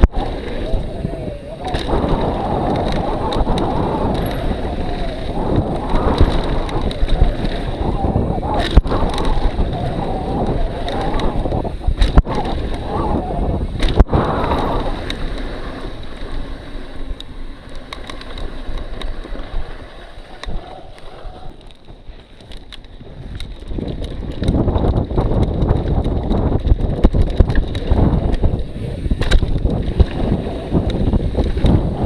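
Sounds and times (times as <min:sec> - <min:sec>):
rumble: 0:00.0 - 0:32.0
wind rushing over microphone: 0:00.0 - 0:32.0
clicks and rattles: 0:01.6 - 0:13.2, 0:17.6 - 0:19.4, 0:21.5 - 0:28.6.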